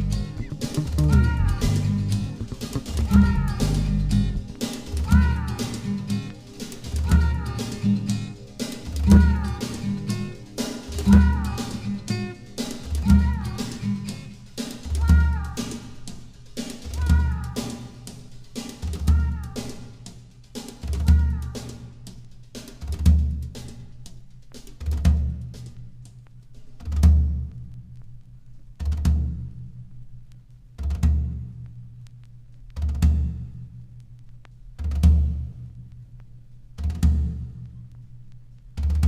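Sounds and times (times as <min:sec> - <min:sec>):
slow instrumental world music: 0:00.0 - 0:20.1
short falling pitched notes: 0:00.2 - 0:06.1.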